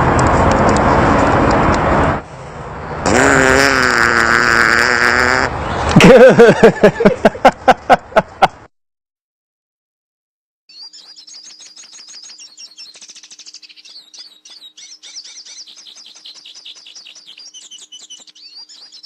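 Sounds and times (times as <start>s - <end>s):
bird chirping and trilling: 10.7s - 19.0s.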